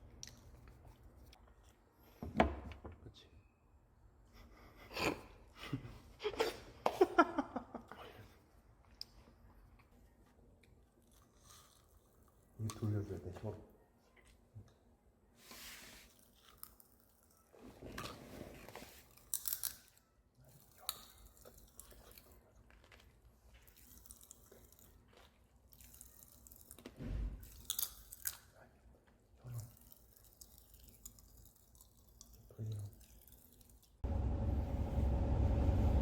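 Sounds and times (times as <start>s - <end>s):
food chewing and crunching: 8.9s - 12.6s, 16.1s - 34.0s.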